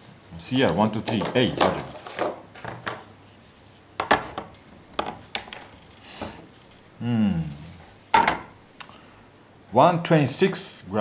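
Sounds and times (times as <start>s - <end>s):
murmured voice: 7.0s - 7.8s.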